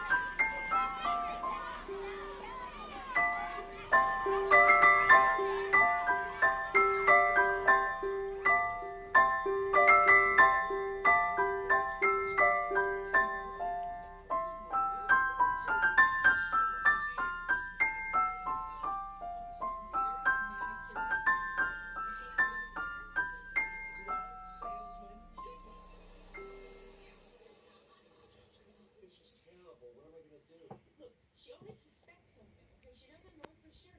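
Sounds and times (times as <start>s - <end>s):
gentle piano melody: 0.0s - 27.2s.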